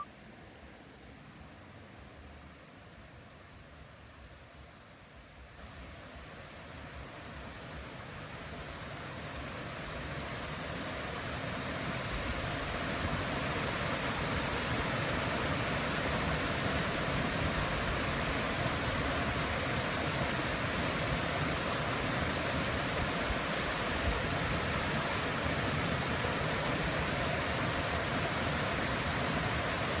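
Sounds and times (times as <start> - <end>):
waterfall rushing: 11.9 - 30.0.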